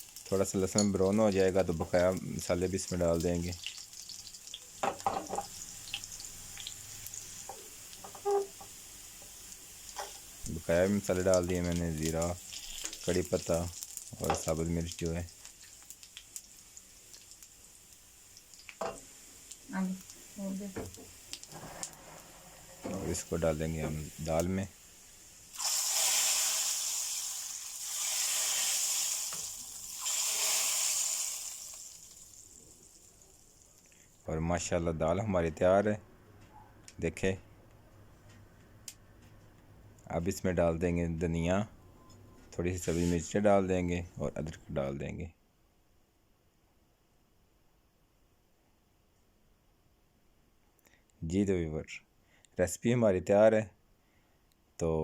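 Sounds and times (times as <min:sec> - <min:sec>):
garlic sizzling in oil: 0:00.0 - 0:33.8.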